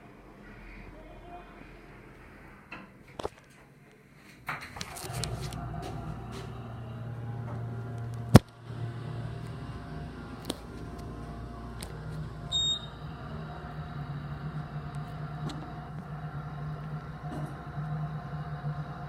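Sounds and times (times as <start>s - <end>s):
elevator hum: 4.4s - 19.0s
electronic elevator ding: 12.5s - 13.0s.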